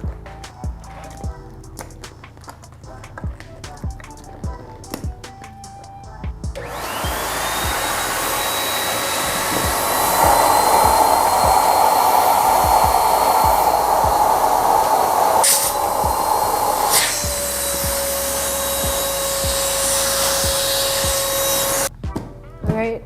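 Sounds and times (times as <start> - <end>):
background music with beat: 0.0 - 23.0
electric balloon pump whining: 6.6 - 21.9
rush of air through hose: 6.7 - 21.9.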